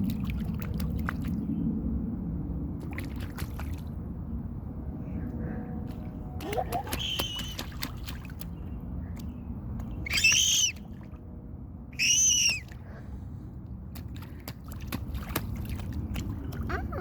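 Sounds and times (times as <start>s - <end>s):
toddler squealing: 10.1s - 10.8s, 12.0s - 12.6s.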